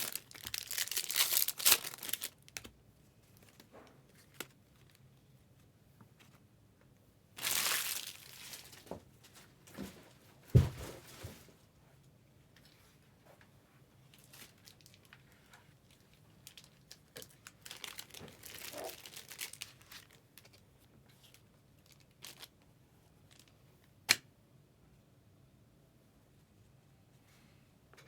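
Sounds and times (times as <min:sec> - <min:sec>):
plastic wrapping crinkling and tearing: 0:00.0 - 0:02.7, 0:07.4 - 0:08.9, 0:14.1 - 0:20.6, 0:21.2 - 0:22.6.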